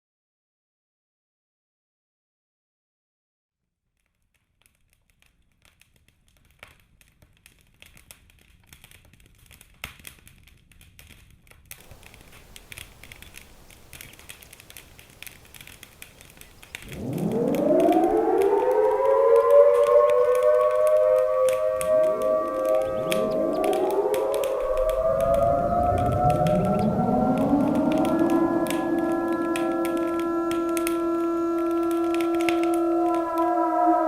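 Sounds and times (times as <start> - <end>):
crackling static with clicks: 11.0 - 34.0
civil defense siren wailing: 11.9 - 34.0.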